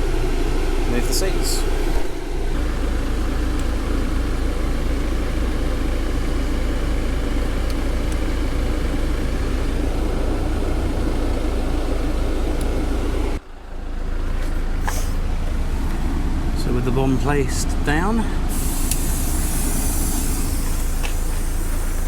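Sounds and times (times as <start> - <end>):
ventilation blower rushing air: 0.0 - 5.6, 14.8 - 22.0
low engine hum: 0.0 - 22.0.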